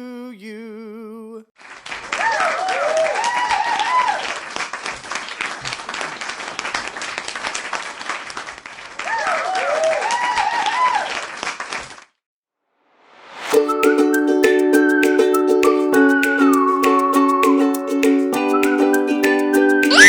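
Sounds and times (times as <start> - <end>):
crowd applause and cheering: 1.7 - 7.8, 13.5 - 20.0
plucked-string tune: 13.5 - 20.0.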